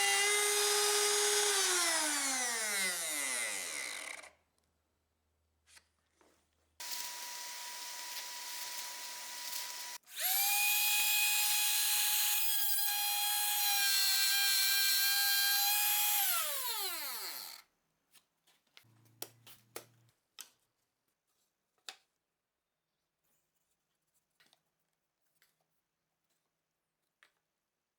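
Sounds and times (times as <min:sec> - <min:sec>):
trim router whine: 0:00.0 - 0:04.3, 0:06.8 - 0:17.6.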